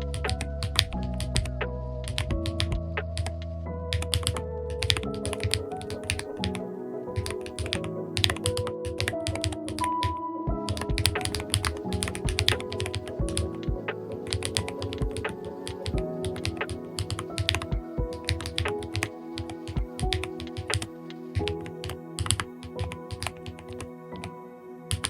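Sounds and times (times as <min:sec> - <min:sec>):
background music: 0:00.0 - 0:25.0
keyboard keystroke clacks: 0:04.0 - 0:06.6, 0:07.2 - 0:10.1, 0:10.7 - 0:20.9, 0:21.6 - 0:23.8.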